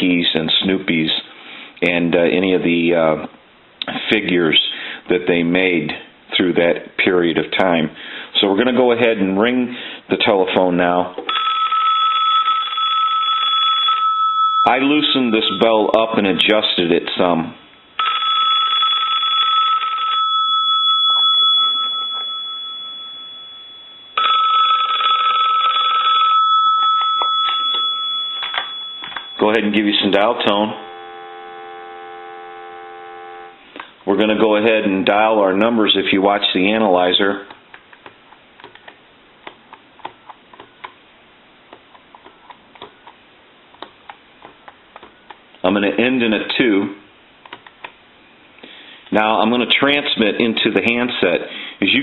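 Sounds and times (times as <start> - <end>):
telephone bell ringing: 11.3 - 15.8, 17.6 - 33.6.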